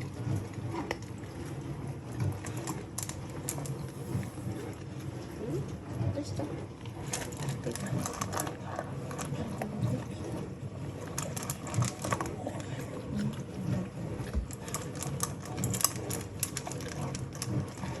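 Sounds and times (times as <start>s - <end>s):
dog chewing and licking: 6.8s - 18.0s.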